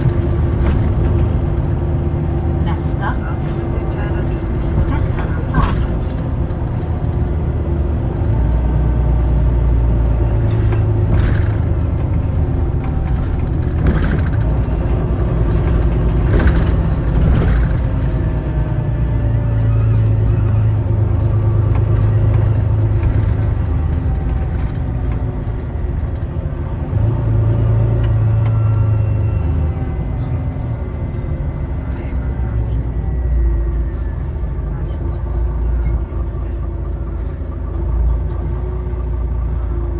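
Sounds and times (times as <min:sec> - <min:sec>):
bus engine and road rumble: 0:00.0 - 0:39.9
sharp knocks and rattles: 0:09.4 - 0:18.9.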